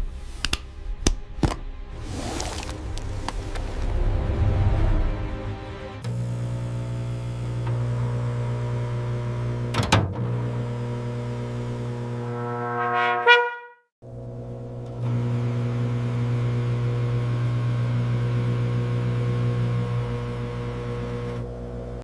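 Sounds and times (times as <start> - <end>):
microwave oven humming: 6.1 - 12.2, 14.0 - 22.0
brief rising tone: 12.0 - 13.8.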